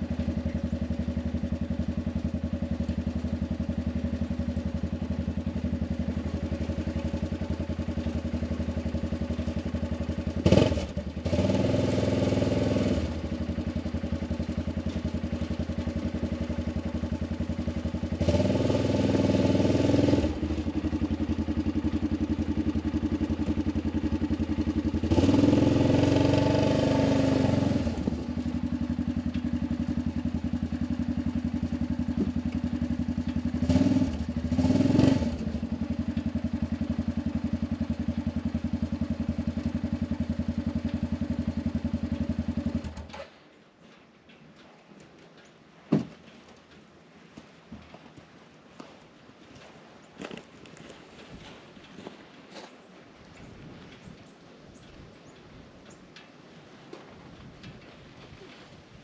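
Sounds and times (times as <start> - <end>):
atv engine revving: 0.0 - 43.3
atv engine idling: 0.0 - 43.5, 49.6 - 58.7.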